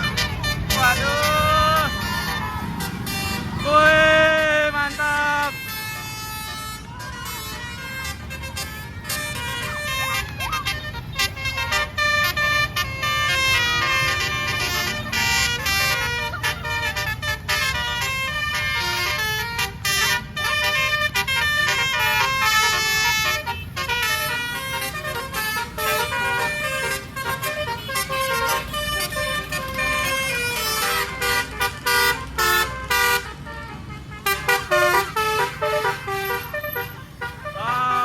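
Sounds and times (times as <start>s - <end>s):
musical horns playing tunes: 0.0s - 38.0s.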